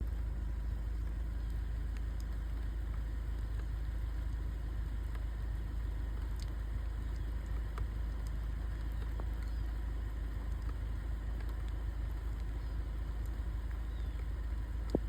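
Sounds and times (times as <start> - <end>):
deep low rumble: 0.0 - 9.8
drops ticking: 0.0 - 15.0
steady rain: 0.0 - 15.0.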